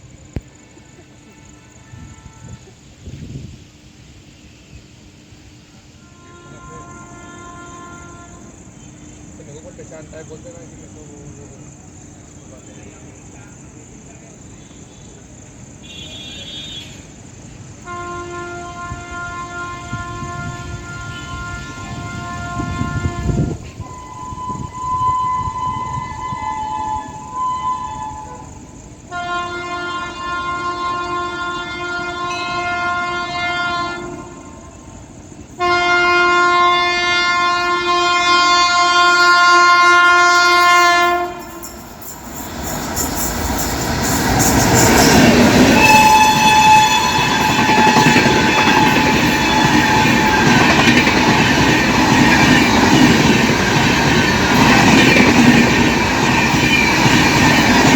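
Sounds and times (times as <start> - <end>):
locomotive horn blasts: 1.2 - 2.8, 6.0 - 8.7, 15.8 - 17.1, 17.8 - 34.7, 35.6 - 41.8, 44.6 - 55.6
train rushing past: 16.8 - 57.9
wheels clickety-clack over rails: 41.0 - 57.9.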